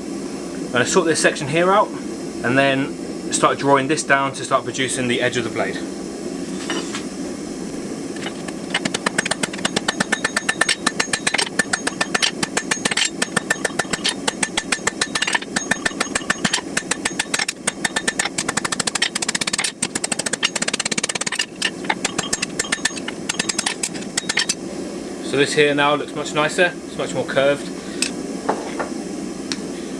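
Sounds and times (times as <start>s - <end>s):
hammer striking steel on anvil: 8.2s - 24.6s.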